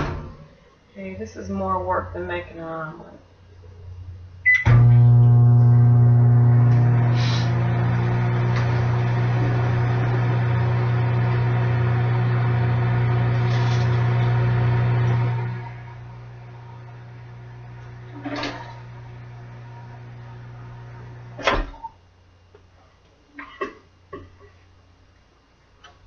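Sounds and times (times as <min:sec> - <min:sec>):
microwave oven humming: 0:03.6 - 0:22.2
microwave keypad beep: 0:04.5 - 0:04.8.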